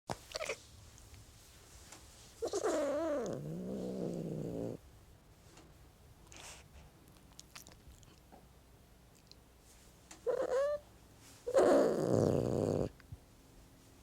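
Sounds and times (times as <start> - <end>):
cat growling: 2.4 - 4.8, 10.2 - 10.8, 11.5 - 13.0.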